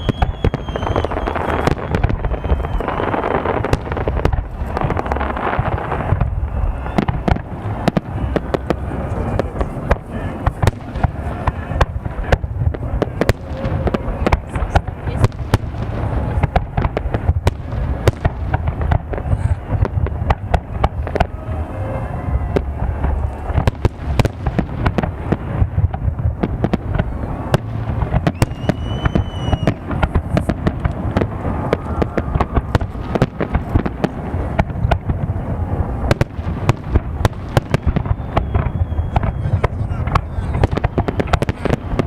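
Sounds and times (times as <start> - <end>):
fireworks bangs and crackles: 0.0 - 42.0
low rumble: 3.7 - 37.2.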